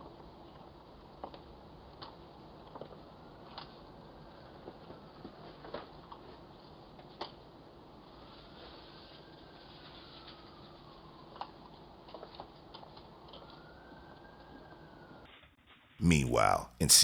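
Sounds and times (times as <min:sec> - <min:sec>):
faint background hiss: 0:16.0 - 0:17.0.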